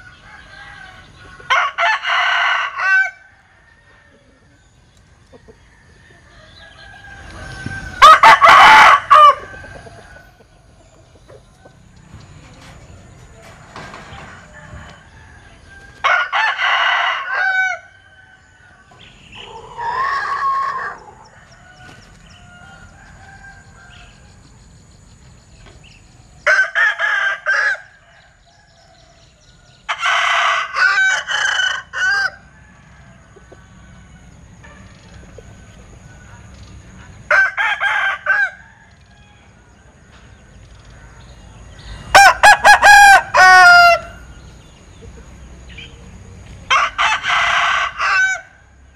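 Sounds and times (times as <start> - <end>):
rooster crowing: 0.0 - 4.6, 5.5 - 10.4, 14.2 - 24.4, 26.4 - 36.3, 37.3 - 39.8, 41.5 - 44.4, 46.7 - 48.8.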